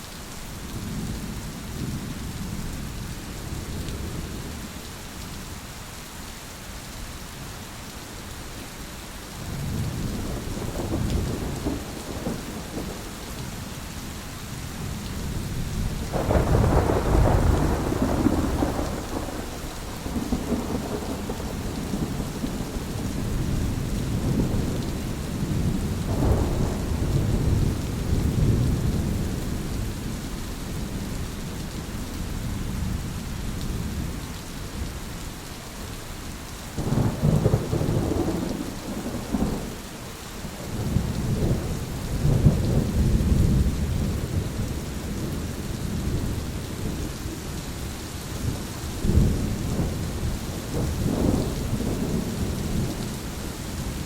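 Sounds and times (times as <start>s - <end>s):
steady rain: 0.0s - 54.0s
thunder rumbling: 9.5s - 13.6s, 15.2s - 31.1s, 36.8s - 39.8s, 48.4s - 54.0s.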